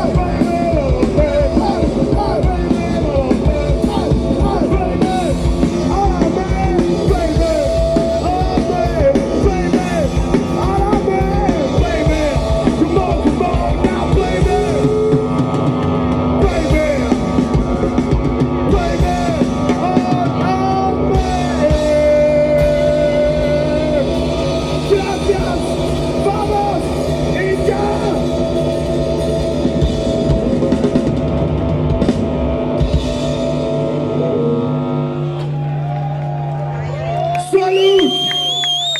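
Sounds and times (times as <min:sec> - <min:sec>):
person singing: 0:00.0 - 0:15.6, 0:16.4 - 0:17.4, 0:18.6 - 0:26.9
drum kit beat: 0:00.0 - 0:34.2
rock band playing: 0:00.0 - 0:38.9.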